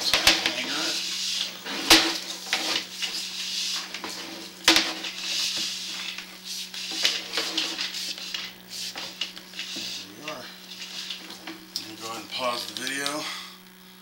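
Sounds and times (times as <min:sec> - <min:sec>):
steady low hum: 0:00.0 - 0:14.0
clattering and sharp knocks: 0:01.7 - 0:02.9, 0:03.8 - 0:06.3.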